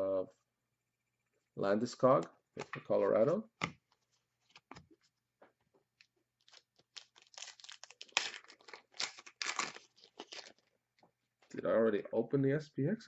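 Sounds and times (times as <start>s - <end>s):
foil wrappers crinkling and tearing: 6.4s - 10.7s.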